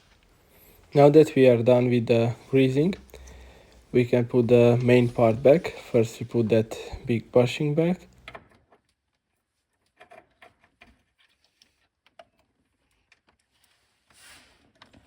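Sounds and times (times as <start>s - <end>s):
soft rustle: 0.0s - 8.1s.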